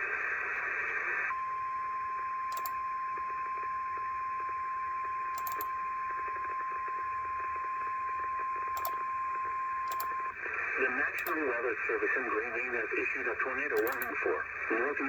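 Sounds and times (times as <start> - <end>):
radio hiss: 0.0 - 1.3, 10.4 - 15.0.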